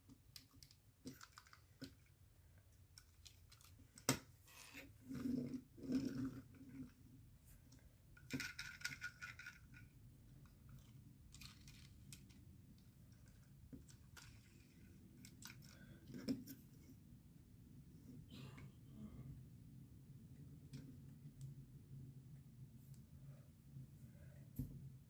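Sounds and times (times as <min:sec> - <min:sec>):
plastic toy bricks clicking: 0:00.3 - 0:02.1, 0:08.2 - 0:09.9.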